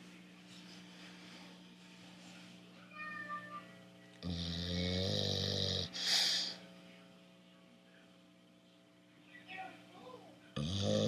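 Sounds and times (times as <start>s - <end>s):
dog snoring: 4.2s - 6.6s, 10.6s - 11.0s.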